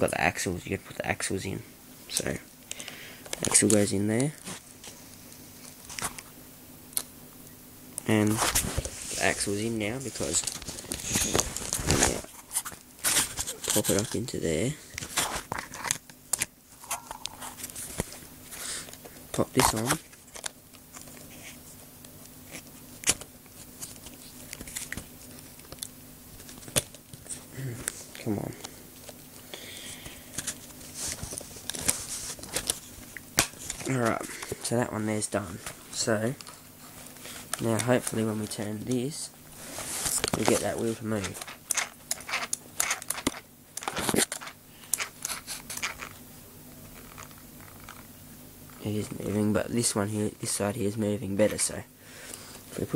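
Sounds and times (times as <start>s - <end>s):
faint steady hum: 0.0s - 52.9s
plastic gears clicking and scraping: 41.3s - 46.1s.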